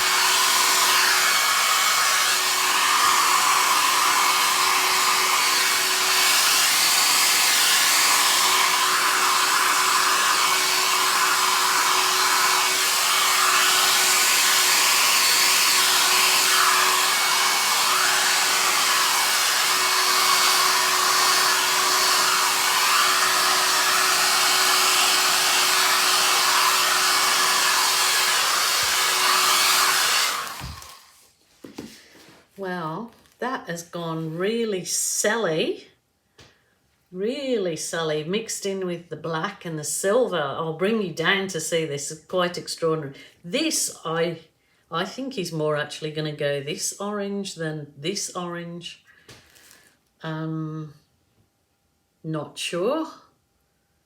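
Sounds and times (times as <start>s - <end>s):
hair dryer blowing air: 0.0s - 32.0s.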